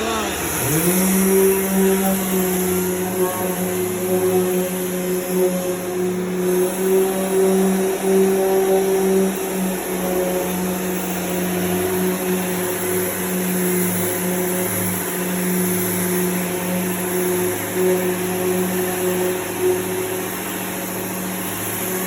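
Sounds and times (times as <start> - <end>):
orbital sander humming: 0.0 - 22.0.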